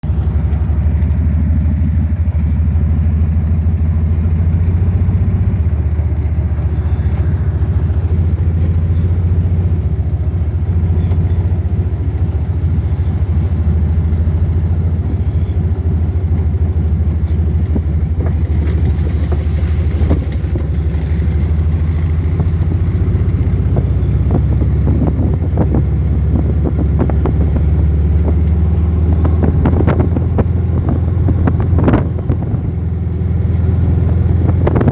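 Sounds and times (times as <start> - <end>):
vehicle engine droning: 0.0 - 34.9
knocks and rattles: 17.2 - 23.8.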